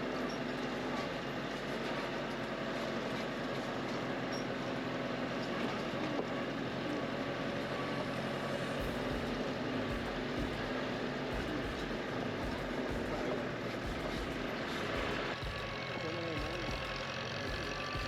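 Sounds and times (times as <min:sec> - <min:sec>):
wagon and road noise: 0:00.0 - 0:11.4
vehicle engine running: 0:00.0 - 0:18.0.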